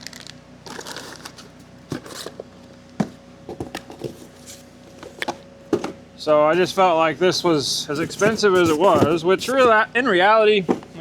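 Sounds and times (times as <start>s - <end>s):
parts clicking and knocking: 0.0s - 6.0s, 7.8s - 9.8s
packaging rustling: 0.0s - 7.0s, 7.8s - 9.8s.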